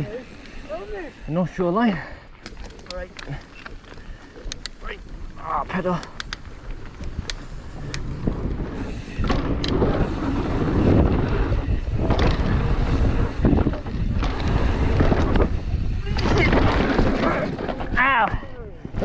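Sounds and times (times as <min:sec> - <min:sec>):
mountain bike rattling on trail: 0:00.0 - 0:19.0
light clicks: 0:04.4 - 0:04.8, 0:05.9 - 0:08.1
wind on microphone: 0:04.4 - 0:19.0
bike knocking over bumps: 0:09.2 - 0:18.1.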